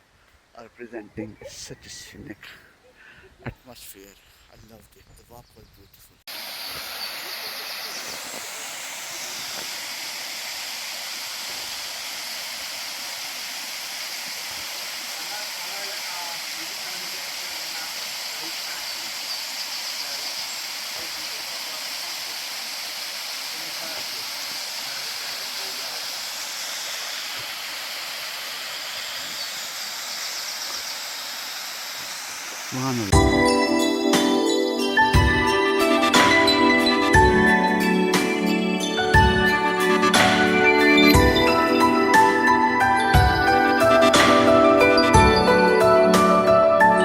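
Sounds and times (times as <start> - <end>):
waterfall rushing: 6.3 - 33.2.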